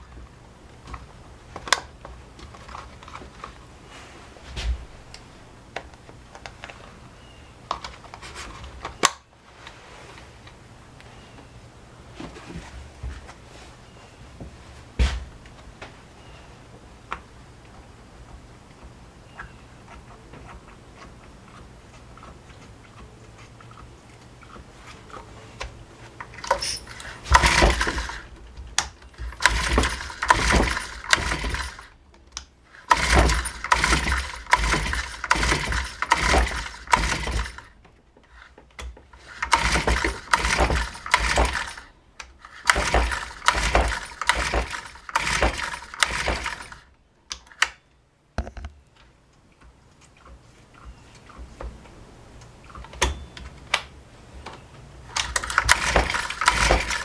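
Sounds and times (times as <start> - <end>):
engine pull-start cranking: 26.2 - 28.3, 29.0 - 31.9, 32.7 - 37.7, 39.1 - 46.8, 55.1 - 57.0.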